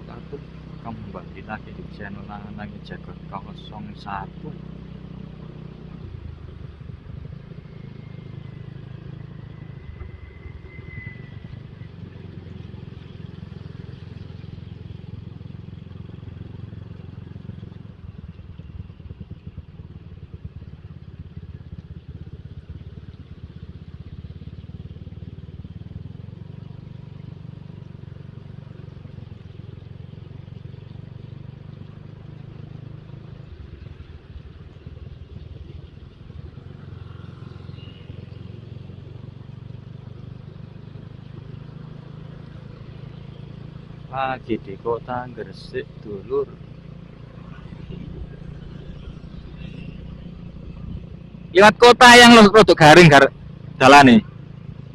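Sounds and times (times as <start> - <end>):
motorcycle engine and wind drone: 0.0 - 54.9
faint high whistle: 9.6 - 12.0.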